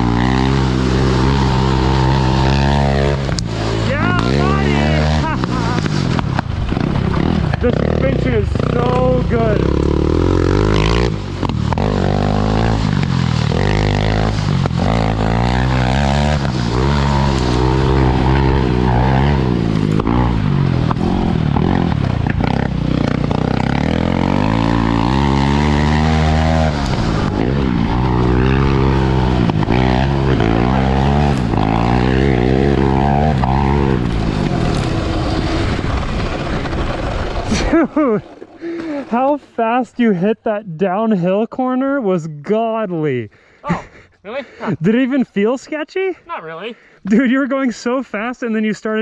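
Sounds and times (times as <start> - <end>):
quad engine revving: 0.0 - 39.2.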